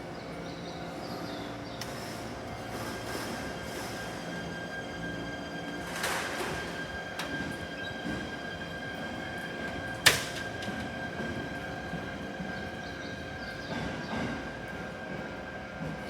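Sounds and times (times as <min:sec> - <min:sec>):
train whine: 0:00.0 - 0:16.0
train doors clunking shut: 0:09.9 - 0:11.0.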